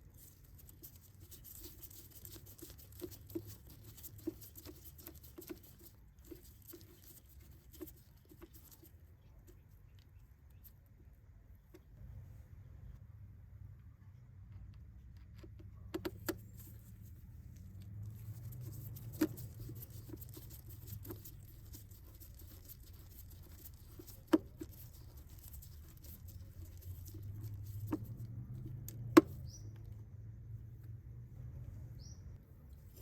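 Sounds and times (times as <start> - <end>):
light scratching: 0.0 - 10.9, 14.6 - 33.0
faint low hum: 0.0 - 33.0.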